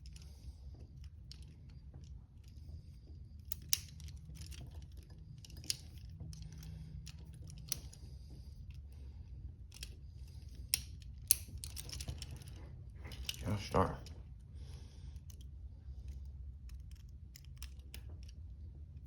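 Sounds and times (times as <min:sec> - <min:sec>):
lock pick clicking in handcuffs: 0:03.4 - 0:08.0, 0:09.7 - 0:13.9, 0:16.1 - 0:18.4.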